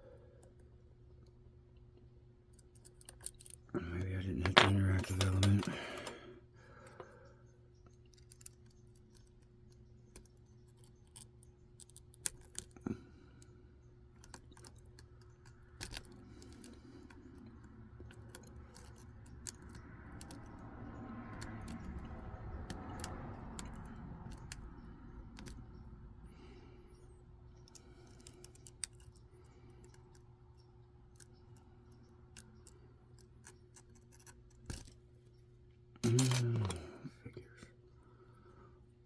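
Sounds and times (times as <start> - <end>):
lock pick metallic clicks: 4.4 - 6.2.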